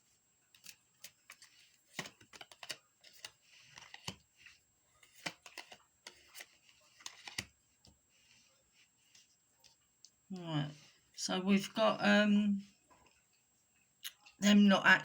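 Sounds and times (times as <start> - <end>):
cards clicking and tapping: 0.5 - 8.0
soft card rustles: 0.5 - 9.9.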